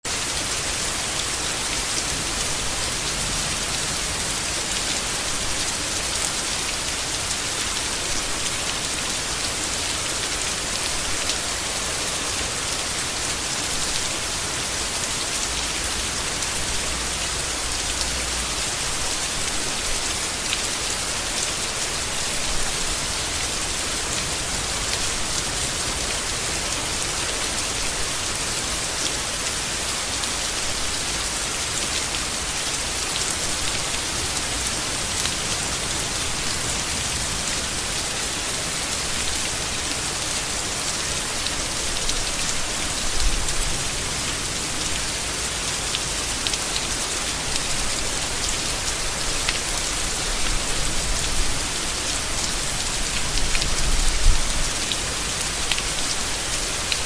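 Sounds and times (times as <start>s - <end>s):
rain falling on leaves: 0.0s - 57.0s.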